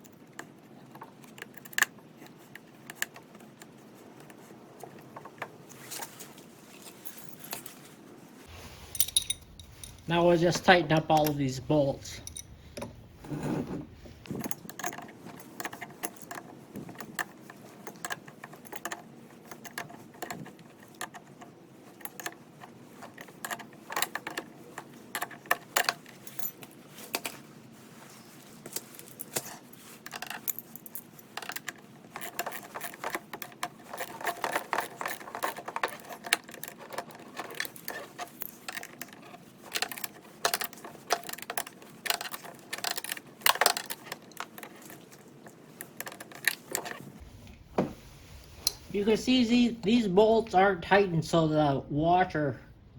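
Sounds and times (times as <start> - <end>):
small metallic clinks: 8.8 - 10.1, 11.0 - 13.0, 14.2 - 27.4.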